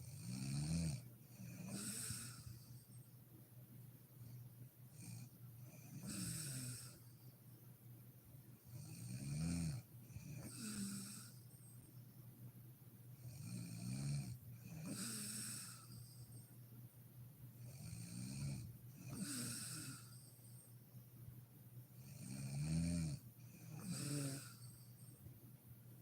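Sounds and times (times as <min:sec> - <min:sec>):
woman snoring: 0:00.1 - 0:02.8, 0:05.8 - 0:07.1, 0:08.8 - 0:11.4, 0:13.3 - 0:16.3, 0:17.7 - 0:20.3, 0:22.0 - 0:24.9.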